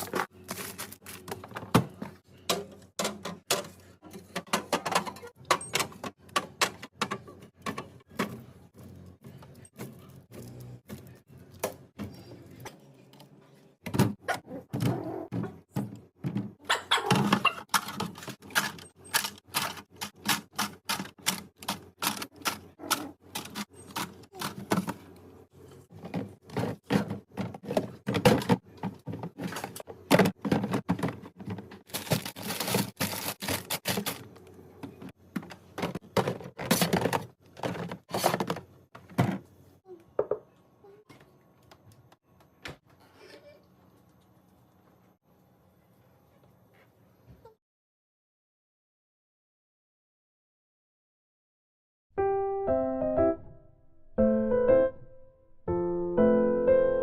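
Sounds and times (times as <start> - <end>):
plastic containers clacking: 25.9 - 39.4.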